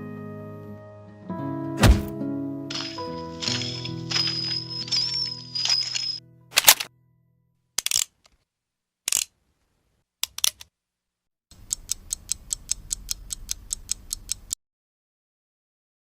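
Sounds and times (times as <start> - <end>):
mechanical ratcheting clicks: 7.8 - 8.2, 9.1 - 9.3.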